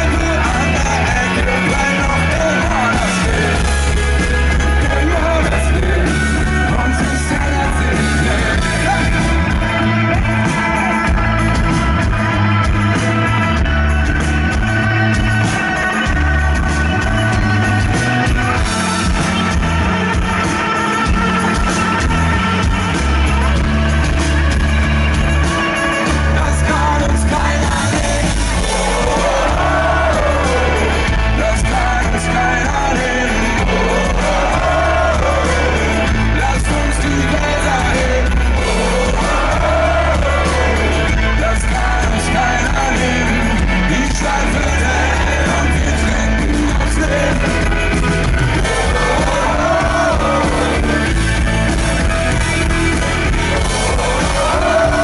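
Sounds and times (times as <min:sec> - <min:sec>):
pop-rock band with singing: 0:00.0 - 0:55.0.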